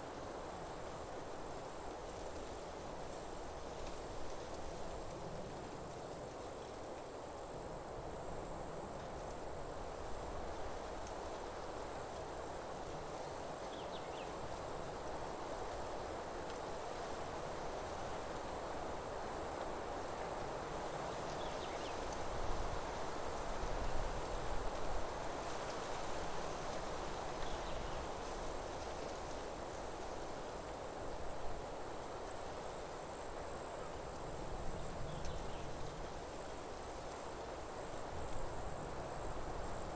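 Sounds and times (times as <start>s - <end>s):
insects trilling: 20.2s - 23.6s.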